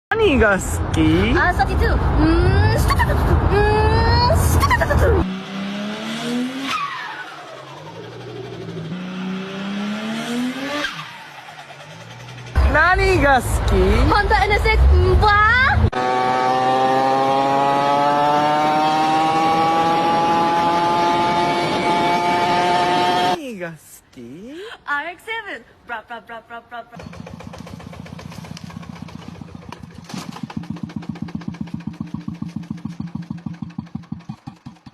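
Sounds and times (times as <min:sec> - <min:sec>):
car engine accelerating: 0:00.8 - 0:23.4
rotary engine idling: 0:11.2 - 0:12.8, 0:27.0 - 0:34.9.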